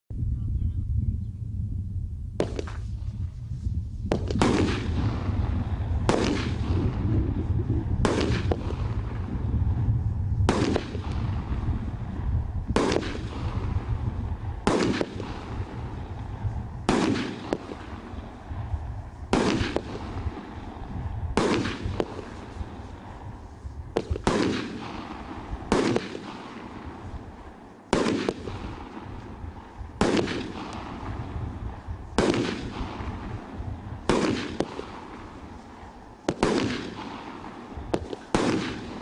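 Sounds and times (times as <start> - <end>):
low rumble: 0.1 - 25.8
fireworks bangs: 2.4 - 39.0.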